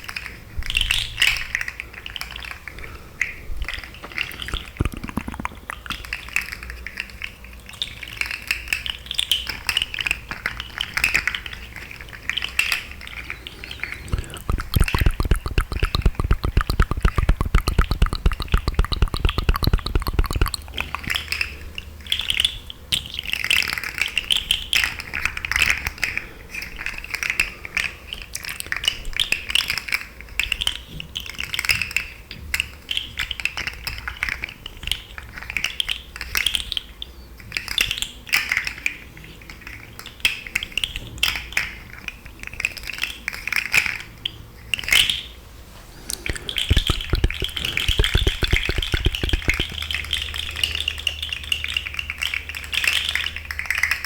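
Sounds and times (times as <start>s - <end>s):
wet mouth clicks and smacks: 2.1s - 7.3s, 11.9s - 21.6s, 46.0s - 54.0s.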